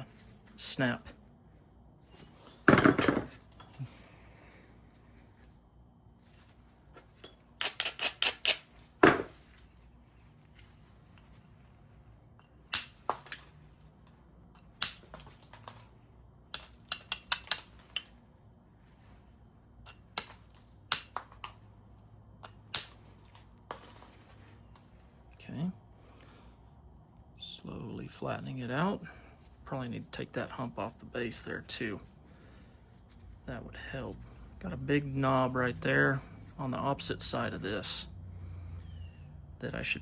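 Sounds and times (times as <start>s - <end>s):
tool striking stone clicks: 7.2s - 9.3s, 12.7s - 13.4s, 14.6s - 15.7s, 16.5s - 18.1s, 19.9s - 21.6s, 22.4s - 23.1s.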